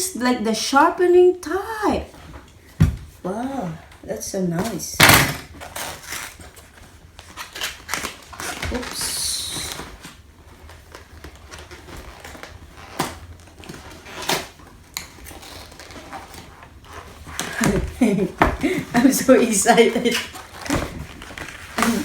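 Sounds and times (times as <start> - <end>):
packaging rustle: 5.5 - 22.0.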